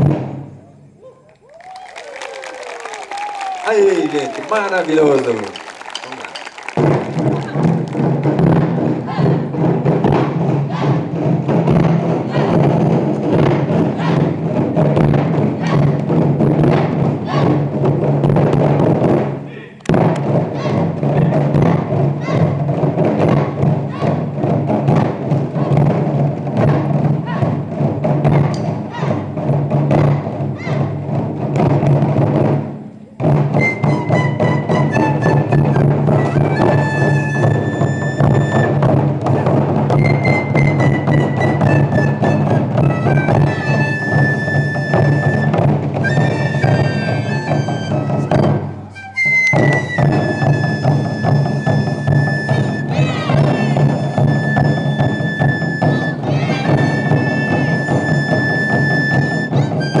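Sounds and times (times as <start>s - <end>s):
drum ensemble playing fast: 0.0s - 1.0s, 1.6s - 60.0s
high bamboo flute melody: 33.4s - 60.0s.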